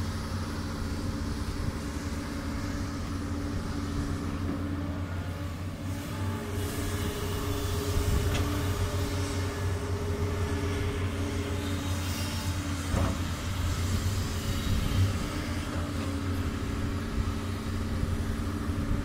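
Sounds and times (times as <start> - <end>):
excavator diesel engine running: 0.0 - 19.0.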